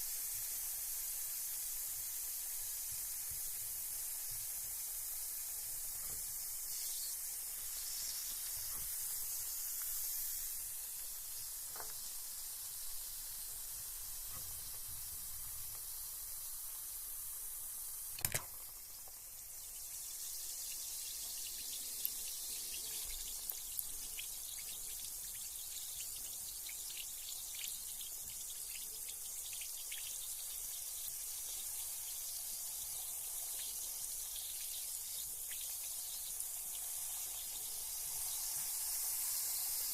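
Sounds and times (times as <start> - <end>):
bath bomb fizzing in water: 0.0 - 39.9
small pops and drips: 0.2 - 10.3, 11.0 - 16.0, 18.1 - 39.8
sharp click: 18.2 - 18.8.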